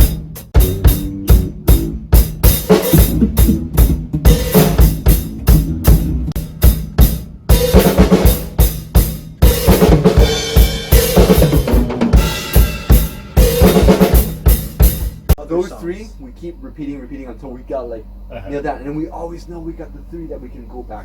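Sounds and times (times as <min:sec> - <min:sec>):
drum kit rock beat: 0:00.0 - 0:15.5
bass line: 0:00.0 - 0:16.0.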